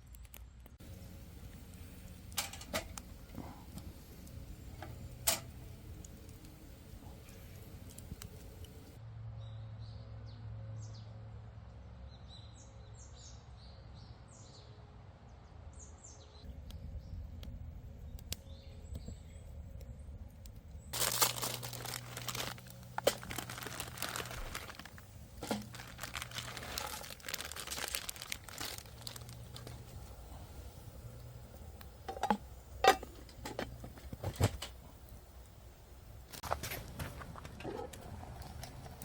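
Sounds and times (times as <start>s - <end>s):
crackling and crunching clicks: 0.0s - 9.0s, 19.8s - 30.3s
small birds chirping: 0.8s - 9.0s, 17.9s - 32.8s.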